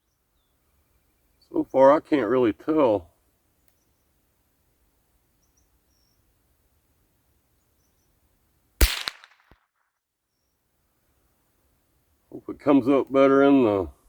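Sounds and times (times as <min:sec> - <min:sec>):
rifle shot: 0:08.8 - 0:09.6.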